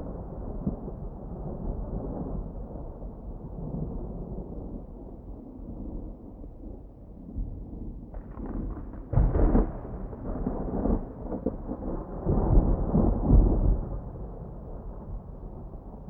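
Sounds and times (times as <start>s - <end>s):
thunder crackle: 8.2s - 16.0s.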